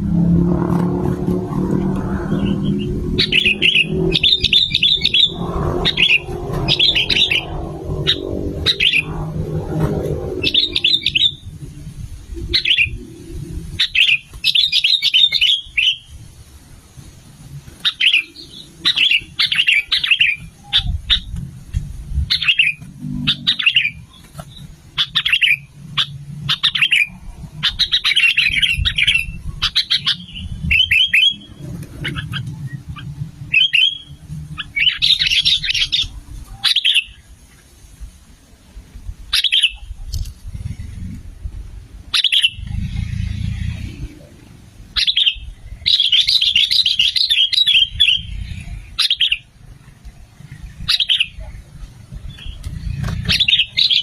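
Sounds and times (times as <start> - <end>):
low rumble: 0.0 - 14.0, 39.9 - 46.0
bulbul chirping calls: 2.4 - 9.2, 12.4 - 13.0, 13.8 - 16.1, 22.3 - 37.2, 39.3 - 40.1, 42.1 - 42.8, 45.0 - 49.5, 50.8 - 51.6.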